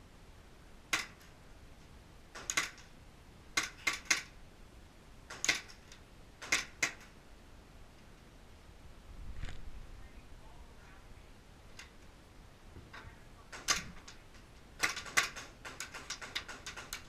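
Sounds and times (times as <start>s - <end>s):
airsoft pistol shots: 2.3s - 2.9s, 5.3s - 5.8s, 6.4s - 7.1s, 14.8s - 17.0s.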